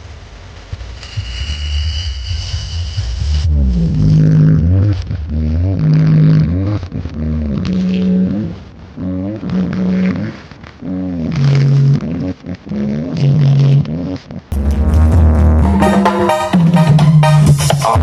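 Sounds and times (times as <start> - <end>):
heavy low rumble: 0.0 - 9.4, 14.5 - 17.6
loud bass-heavy music: 0.5 - 6.9, 14.5 - 18.0.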